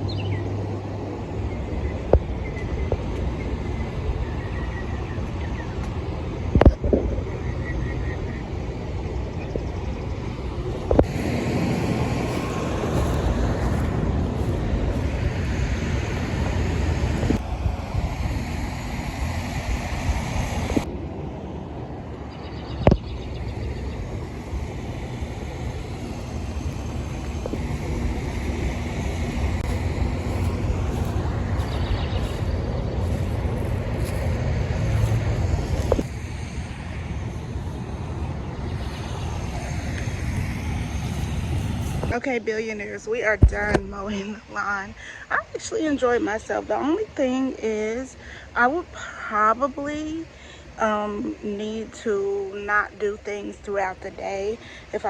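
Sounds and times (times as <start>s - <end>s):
lawn mower cutting grass: 10.9s - 20.9s, 24.1s - 42.2s.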